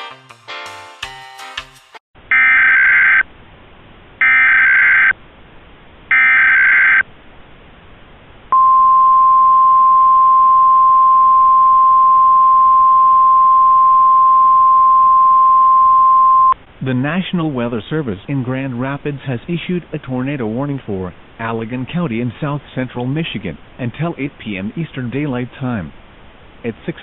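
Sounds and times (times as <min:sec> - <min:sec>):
steady attention tone: 0:08.5 - 0:16.6.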